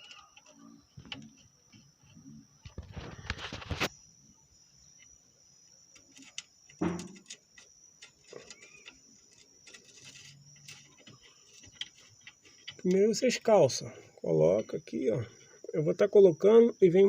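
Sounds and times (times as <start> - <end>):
high-pitched whine: 0.0 - 17.0
metal parts clinking and scraping: 6.2 - 12.8
metal rattling: 6.8 - 7.4.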